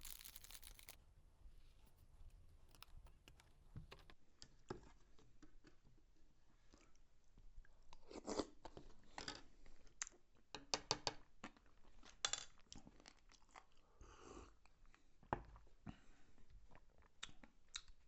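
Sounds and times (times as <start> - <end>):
chewing crisp food: 0.0 - 1.0.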